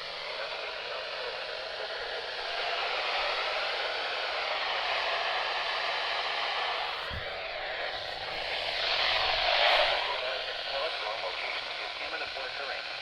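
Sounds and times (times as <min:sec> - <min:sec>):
radio static hiss: 0:00.0 - 0:03.2, 0:06.8 - 0:13.0.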